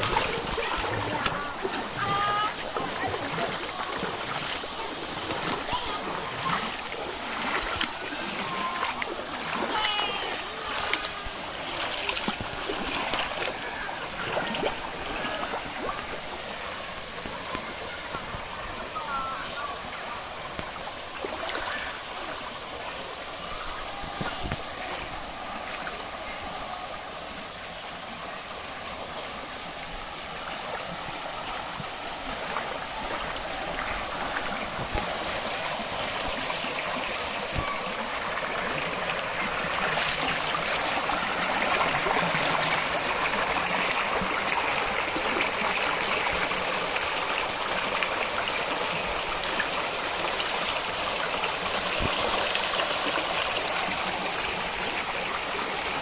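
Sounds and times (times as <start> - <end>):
stream water flowing: 0.0 - 56.0.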